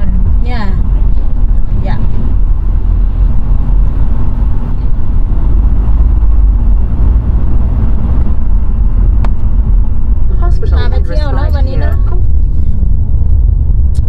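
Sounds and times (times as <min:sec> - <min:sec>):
car cabin road and engine rumble: 0:00.0 - 0:14.0.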